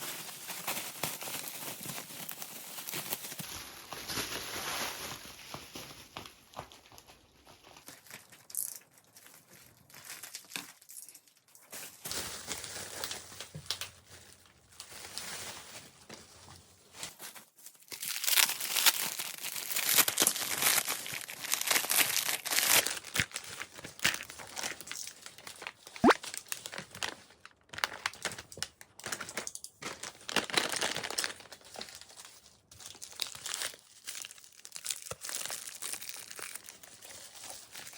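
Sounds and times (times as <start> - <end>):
packaging tearing: 0.0 - 5.2, 17.8 - 32.2, 32.9 - 37.9
packaging crinkling: 0.0 - 6.9, 7.5 - 16.0, 17.0 - 37.9.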